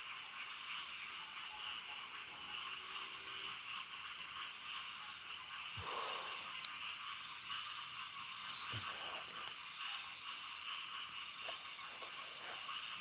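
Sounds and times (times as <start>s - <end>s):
crickets and insects trilling: 0.0s - 13.0s.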